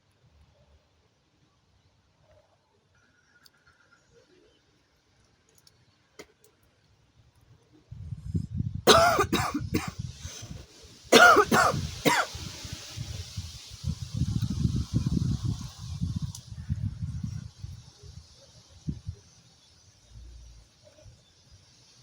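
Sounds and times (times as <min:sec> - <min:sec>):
woman coughing: 0:08.9 - 0:10.0, 0:11.1 - 0:12.3.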